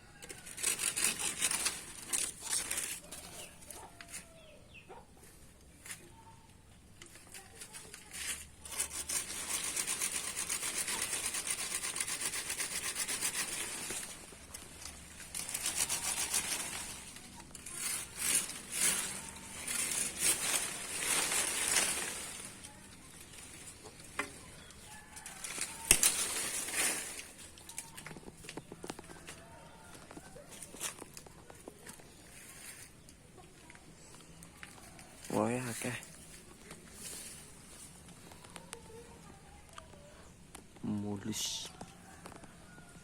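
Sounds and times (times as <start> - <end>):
saw rasping through wood: 0.5 - 2.8, 8.7 - 14.6, 15.2 - 20.7.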